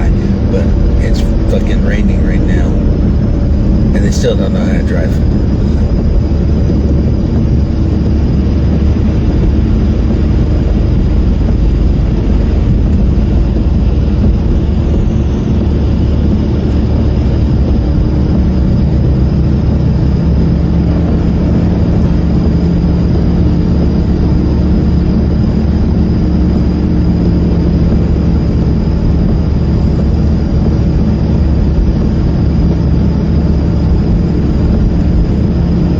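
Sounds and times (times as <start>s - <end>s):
faint high-pitched whine: 0.0s - 7.5s
engine and tyre rumble: 0.0s - 35.9s.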